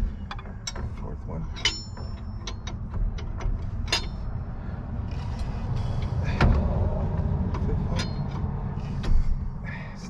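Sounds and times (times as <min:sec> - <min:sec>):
metallic clicks: 0:00.0 - 0:04.4
steady low rumble: 0:00.0 - 0:10.0.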